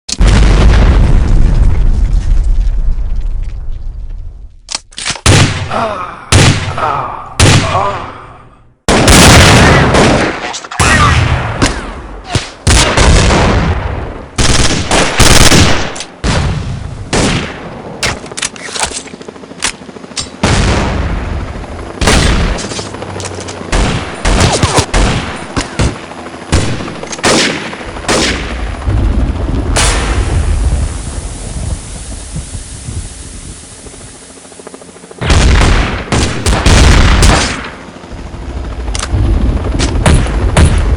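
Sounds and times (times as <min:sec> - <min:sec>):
gunshots in rapid succession: 0:05.2 - 0:08.2, 0:08.9 - 0:18.2, 0:22.0 - 0:23.0, 0:23.7 - 0:28.6, 0:35.2 - 0:37.8.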